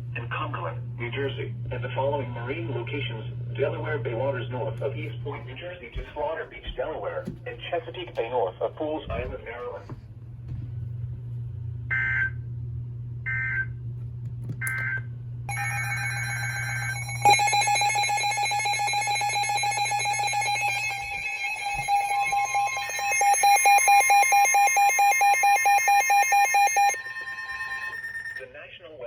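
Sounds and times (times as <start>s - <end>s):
steady alert tone: 15.5s - 28.4s
rapidly pulsing alert beep: 15.6s - 28.4s.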